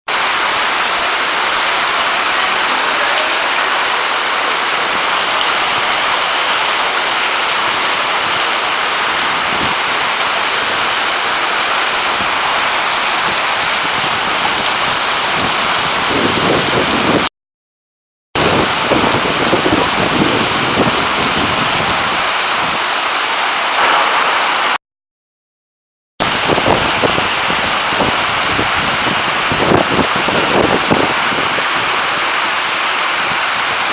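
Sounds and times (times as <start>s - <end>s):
heavy rain downpour: 0.1s - 17.3s, 18.4s - 24.8s, 26.2s - 33.9s
low splashing: 23.7s - 24.8s.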